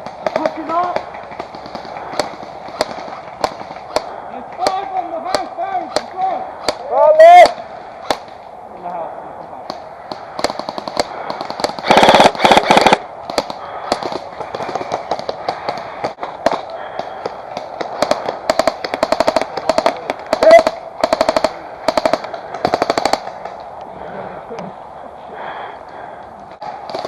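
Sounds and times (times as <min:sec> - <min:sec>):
airsoft guns firing bursts: 0:00.0 - 0:08.3, 0:10.1 - 0:23.4.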